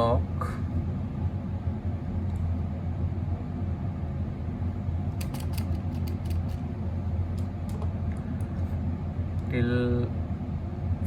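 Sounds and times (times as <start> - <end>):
steady low hum: 0.0 - 11.0
computer mouse clicks: 5.2 - 6.6.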